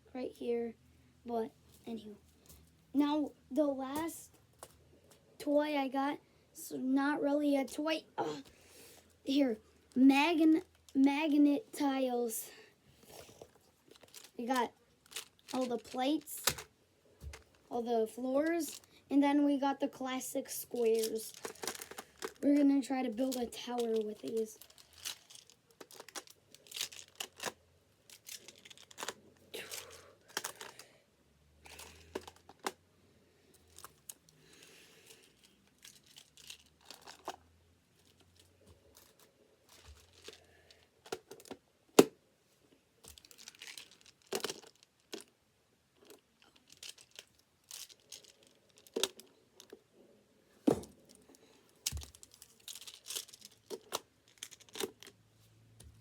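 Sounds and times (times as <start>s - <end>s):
plastic tiles clicking and clacking: 21.0s - 22.6s, 30.3s - 30.8s, 43.1s - 45.3s, 51.8s - 55.2s.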